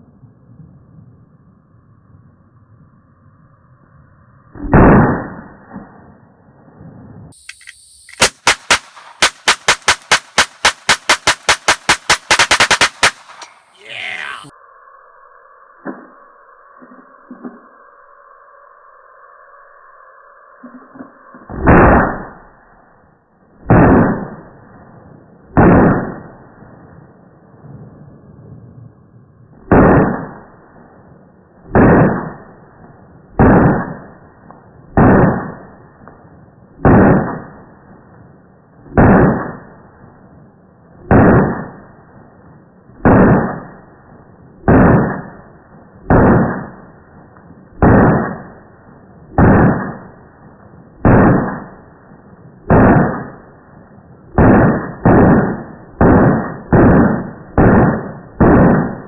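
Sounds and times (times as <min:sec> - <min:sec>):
gunshots: 0:04.6 - 0:05.6, 0:07.4 - 0:14.5, 0:21.5 - 0:22.4, 0:23.6 - 0:24.5, 0:25.5 - 0:26.3, 0:29.6 - 0:30.5, 0:31.7 - 0:32.6, 0:33.3 - 0:34.2, 0:34.9 - 0:35.8, 0:36.8 - 0:37.7, 0:38.9 - 0:39.8, 0:41.0 - 0:42.0, 0:43.0 - 0:43.9, 0:44.6 - 0:47.0, 0:47.7 - 0:48.7, 0:49.3 - 0:50.3, 0:50.9 - 0:51.9, 0:52.6 - 0:53.6, 0:54.2 - 0:59.0.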